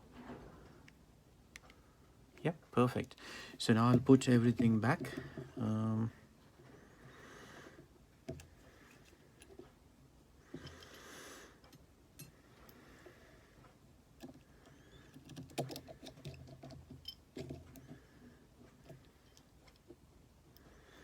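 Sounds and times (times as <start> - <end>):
small tools clicking and tapping: 15.1 - 18.0.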